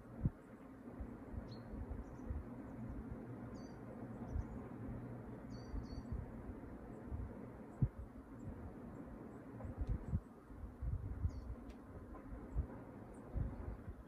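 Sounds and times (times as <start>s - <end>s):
steady low rumble: 0.0s - 14.0s
faint high chirps: 1.4s - 4.8s, 5.4s - 8.6s.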